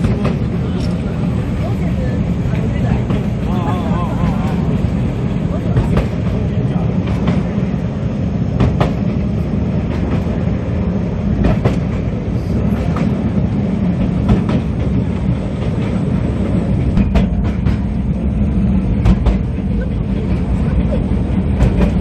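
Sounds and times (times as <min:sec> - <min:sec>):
train rumbling: 0:00.0 - 0:22.0
wheel clacks over rail joints: 0:11.4 - 0:13.3, 0:14.0 - 0:22.0.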